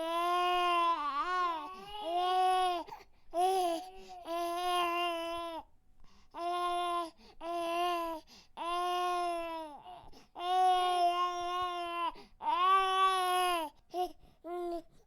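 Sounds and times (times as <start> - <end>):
infant crying: 0.0 - 5.6, 6.4 - 14.8
infant breathing: 2.8 - 4.4, 12.1 - 12.4.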